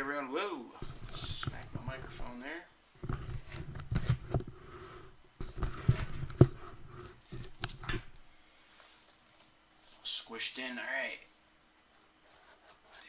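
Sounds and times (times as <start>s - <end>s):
cards rustling and scraping: 0.8s - 2.4s, 3.0s - 8.2s.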